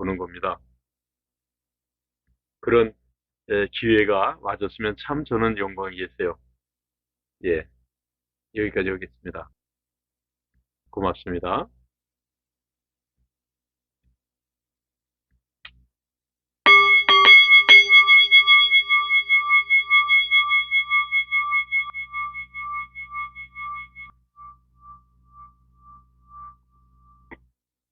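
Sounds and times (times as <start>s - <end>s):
bell-like chime ringing: 16.7s - 27.3s.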